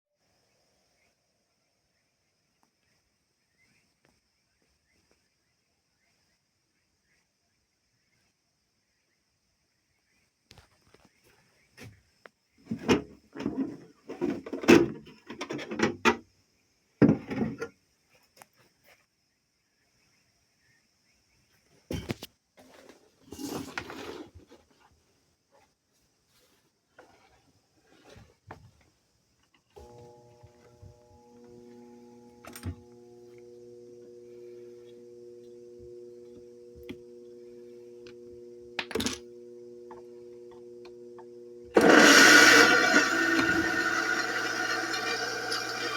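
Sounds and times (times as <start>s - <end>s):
stalled pump motor humming: 29.8s - 45.9s.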